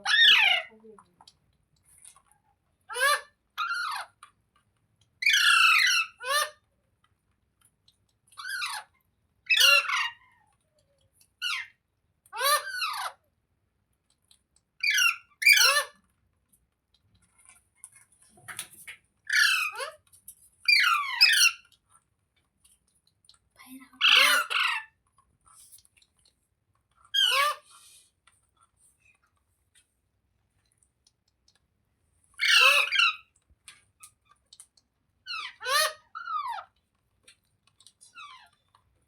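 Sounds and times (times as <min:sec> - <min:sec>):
parrot harsh squawks: 0:00.0 - 0:00.7, 0:02.9 - 0:04.2, 0:05.2 - 0:06.6, 0:09.5 - 0:10.2, 0:12.4 - 0:13.2, 0:14.8 - 0:16.0, 0:19.3 - 0:20.0, 0:20.7 - 0:21.6, 0:24.0 - 0:24.9, 0:27.1 - 0:27.7, 0:32.4 - 0:33.3, 0:35.3 - 0:36.7.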